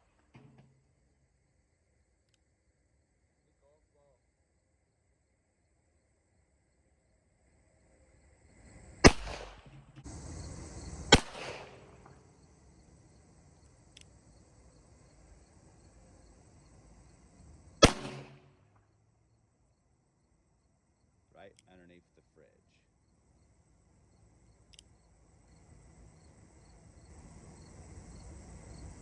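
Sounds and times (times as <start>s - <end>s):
revolver gunshots: 9.0s - 10.1s, 11.0s - 12.2s, 17.8s - 18.6s.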